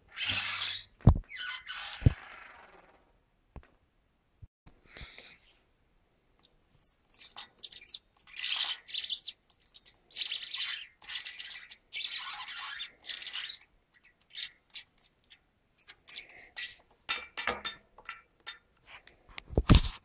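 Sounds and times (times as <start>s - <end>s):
bicycle hub squeaking: 0.1s - 3.0s, 6.8s - 16.8s.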